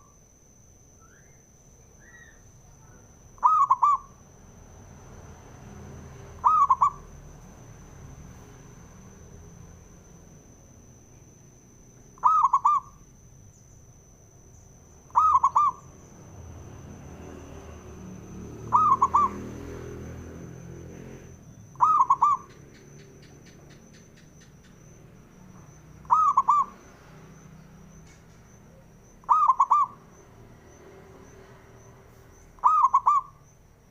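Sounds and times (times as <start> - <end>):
faint high-pitched whine: 0.0 - 33.9
dove cooing: 3.3 - 4.2, 6.4 - 7.2, 12.2 - 13.0, 15.1 - 15.9, 18.5 - 19.9, 21.8 - 22.8, 26.0 - 26.9, 28.7 - 30.0, 32.6 - 33.4.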